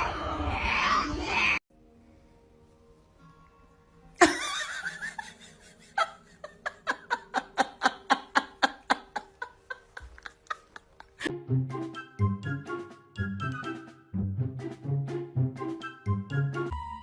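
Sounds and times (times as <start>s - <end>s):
person laughing: 4.2s - 11.3s.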